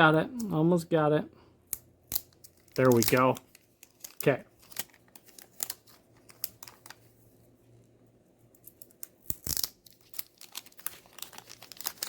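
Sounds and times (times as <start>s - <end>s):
packaging tearing rustle: 2.1s - 7.1s, 8.6s - 12.0s
packaging crinkling: 2.1s - 7.2s, 8.6s - 12.0s.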